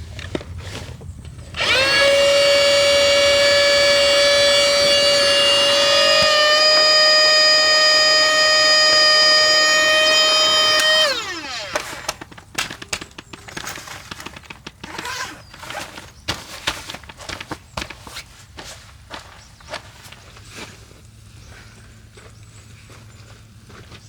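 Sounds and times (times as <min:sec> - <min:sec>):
electric motor whining: 0:01.5 - 0:12.2
clicks and knocks handling gear: 0:10.8 - 0:18.7.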